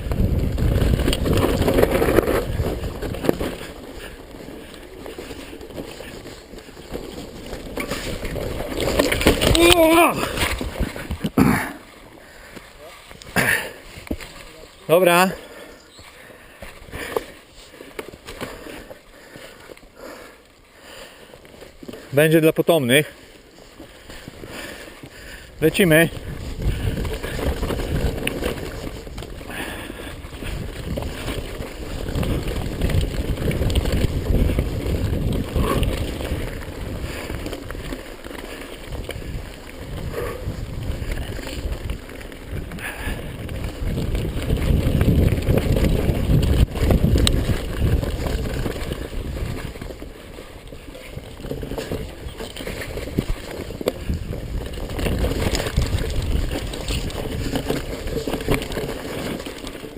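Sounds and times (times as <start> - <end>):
wind rumbling on microphone: 0.0 - 11.7, 23.8 - 59.9
bike rattling over bumps: 0.0 - 59.9
bike tyres rolling on dirt: 0.0 - 59.9.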